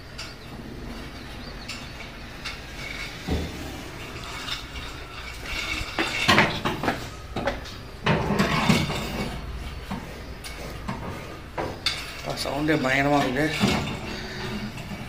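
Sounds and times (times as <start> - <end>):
clattering knocks in washing machine: 3.2 - 3.6.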